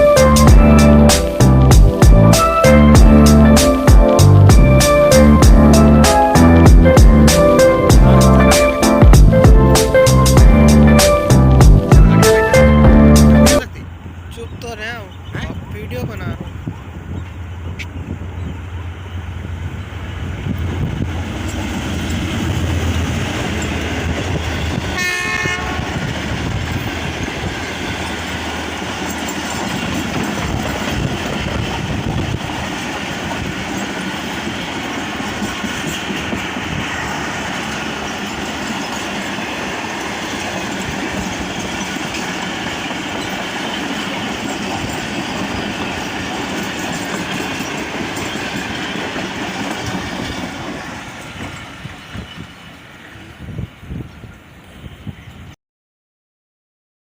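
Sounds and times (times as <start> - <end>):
diesel locomotive engine drone: 0.0 - 55.5
train wheels clattering on rails: 19.6 - 53.0
train horn blast: 24.8 - 26.1.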